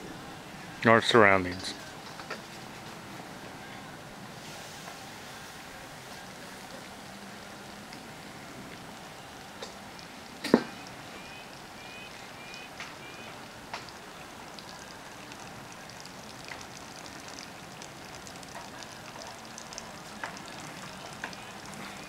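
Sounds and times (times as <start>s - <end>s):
food sizzling on a grill: 4.3s - 22.0s
sharp crackles and pops: 8.7s - 22.0s
bird chirping: 10.7s - 13.4s.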